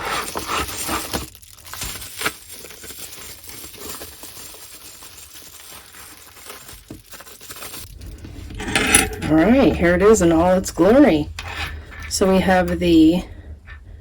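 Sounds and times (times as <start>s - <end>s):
packaging crinkling and rustling: 0.0s - 11.1s.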